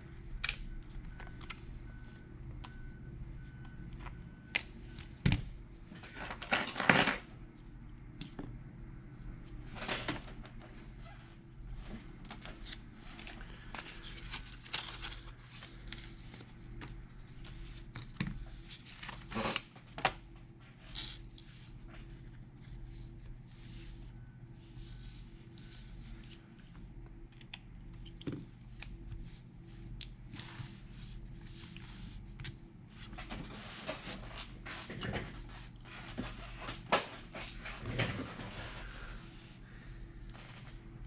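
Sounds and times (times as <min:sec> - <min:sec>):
steady low hum: 0:00.0 - 0:06.4, 0:07.3 - 0:41.0
small objects clicking and scraping: 0:20.9 - 0:21.2.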